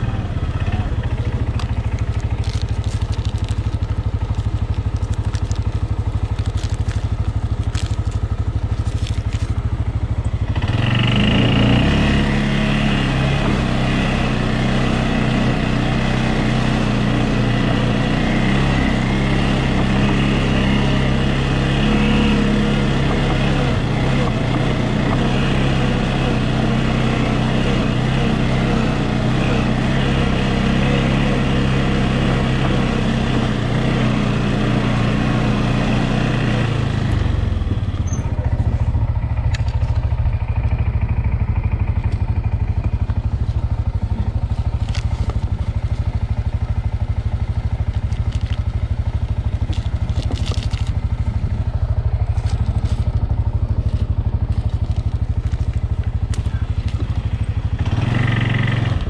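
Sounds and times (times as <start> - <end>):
atv engine running: 0.0 - 59.0.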